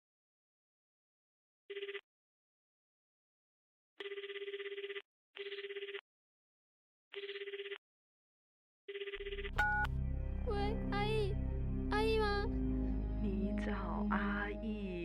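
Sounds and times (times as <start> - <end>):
telephone ringing: 1.7 - 2.0, 4.0 - 6.0, 7.2 - 7.8, 8.9 - 9.9.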